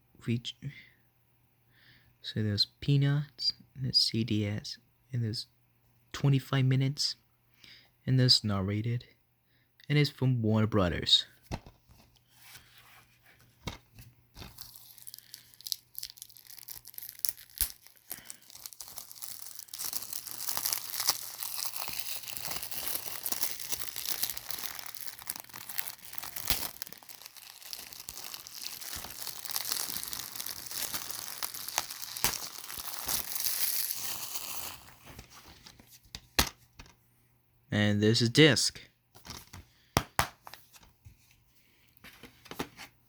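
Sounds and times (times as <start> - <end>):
plastic shrink-wrap crinkling: 14.4 - 35.8.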